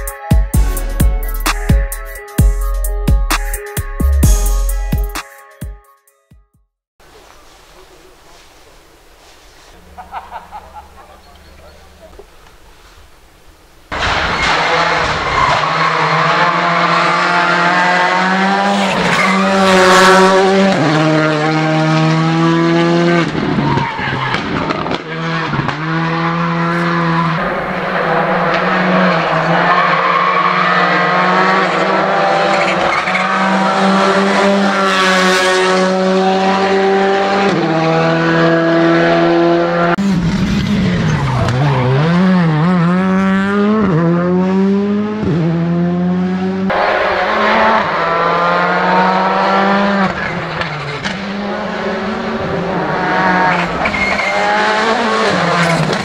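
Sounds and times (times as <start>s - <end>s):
rally car engines revving: 13.9s - 56.0s.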